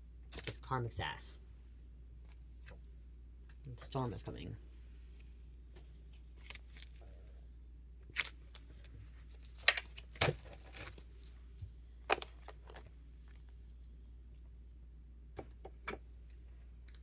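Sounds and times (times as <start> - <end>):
cards shuffling: 8.2 - 11.4.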